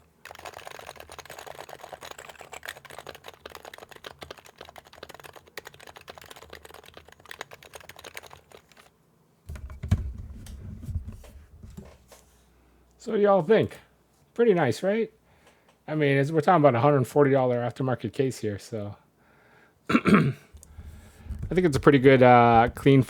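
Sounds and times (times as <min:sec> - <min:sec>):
keyboard typing: 0:00.0 - 0:08.9
low rumble with knock: 0:09.5 - 0:11.8.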